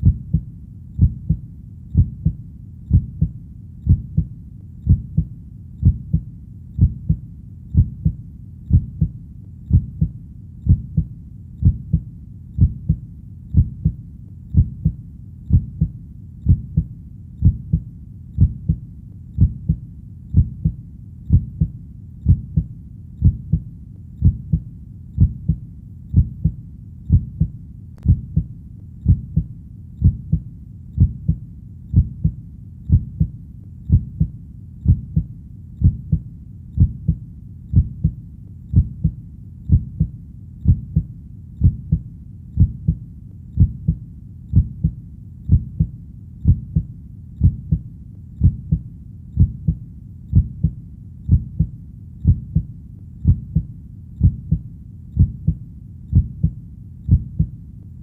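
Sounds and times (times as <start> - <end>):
heartbeat thumps: 0.0 - 18.8, 19.4 - 57.6
faint low rumble: 0.0 - 58.0.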